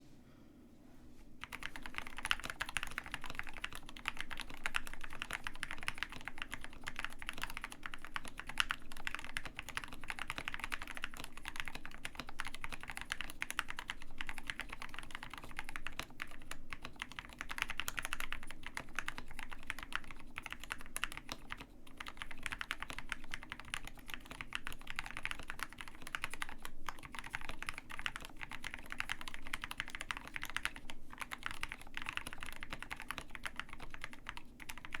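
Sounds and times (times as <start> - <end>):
fast typing on mechanical keyboard: 1.4 - 35.0.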